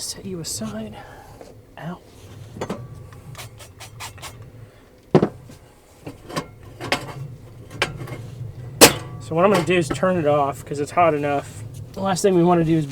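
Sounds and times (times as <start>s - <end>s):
cooking gear clicks and clatter: 2.5s - 12.9s.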